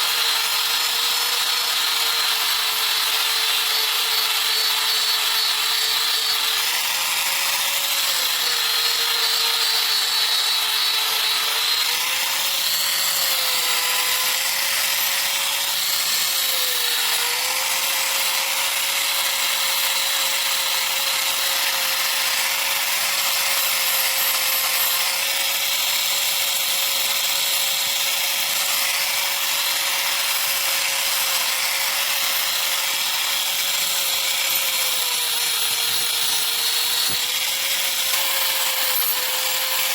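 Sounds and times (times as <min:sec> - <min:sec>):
power tool grinding metal: 0:00.0 - 0:39.9.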